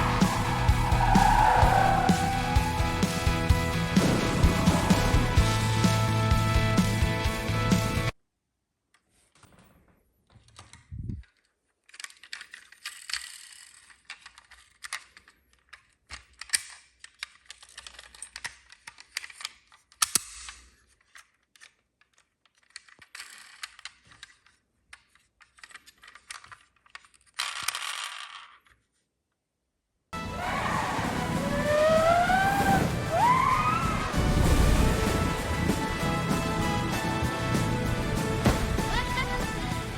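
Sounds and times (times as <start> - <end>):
plastic toy cars clicking and rattling: 8.9 - 29.4.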